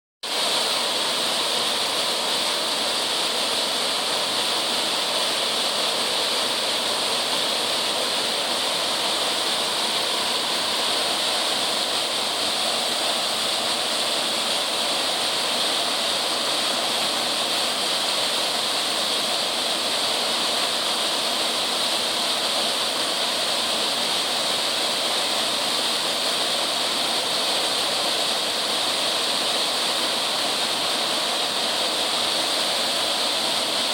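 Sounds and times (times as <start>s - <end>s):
waterfall rushing: 0.2s - 33.9s.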